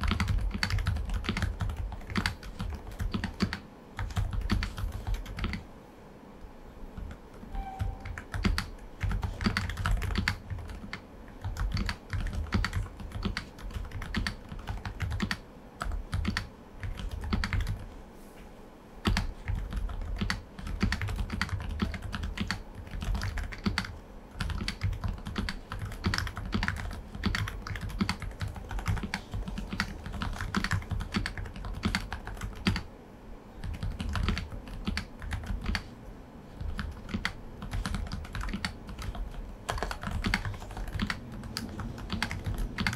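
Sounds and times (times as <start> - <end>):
soft mechanical keyboard typing: 0.0 - 5.6, 7.0 - 18.0, 19.0 - 32.9, 33.6 - 35.9, 36.6 - 42.9.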